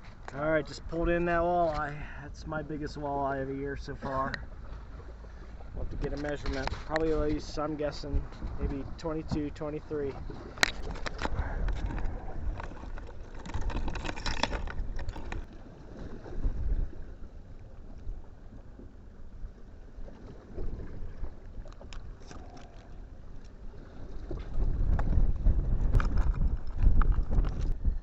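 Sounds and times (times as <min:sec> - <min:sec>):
choppy water against boat: 0:00.0 - 0:28.0
wind gusting over microphone: 0:05.7 - 0:15.5, 0:23.8 - 0:28.0.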